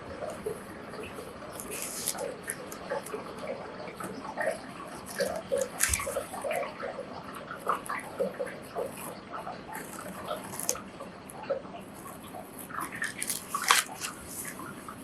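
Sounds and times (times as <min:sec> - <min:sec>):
paper being cut by hand: 0:01.5 - 0:03.1, 0:05.1 - 0:06.3, 0:09.8 - 0:10.8, 0:12.8 - 0:14.6
paper rustling: 0:01.5 - 0:03.2, 0:05.0 - 0:06.3, 0:12.8 - 0:14.7.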